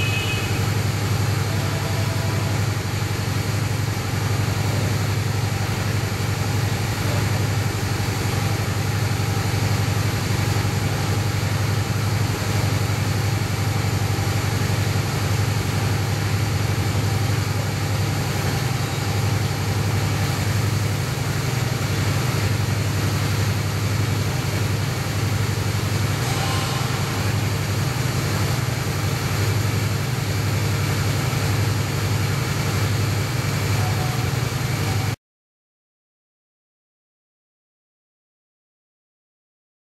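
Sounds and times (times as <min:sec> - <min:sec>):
motorcycle engine idling: 0:00.0 - 0:35.2.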